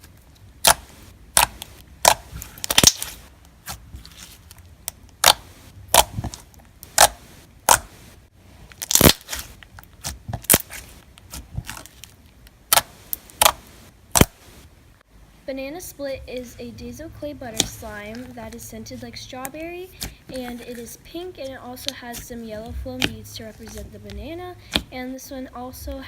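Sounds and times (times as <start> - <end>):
slime popping and clicking: 1.4 - 3.2, 4.9 - 6.3, 6.9 - 7.9, 23.0 - 24.9.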